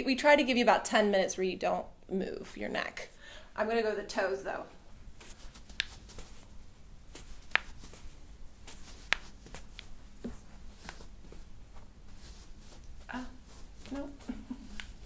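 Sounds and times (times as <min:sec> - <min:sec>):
rustling and handling: 0:04.5 - 0:15.0.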